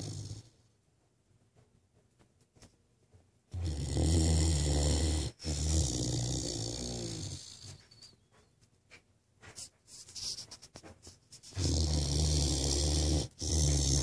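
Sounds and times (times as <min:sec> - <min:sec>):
dog snoring: 0:00.0 - 0:00.6, 0:03.5 - 0:08.0, 0:11.6 - 0:14.0.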